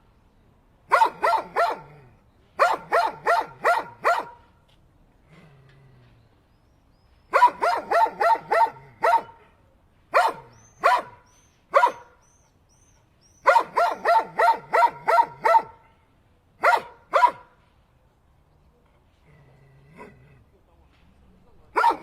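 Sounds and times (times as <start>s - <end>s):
dog barking: 0.9s - 2.0s, 2.6s - 4.5s, 7.3s - 9.5s, 10.1s - 12.2s, 13.4s - 15.9s, 16.6s - 17.5s, 21.7s - 22.0s.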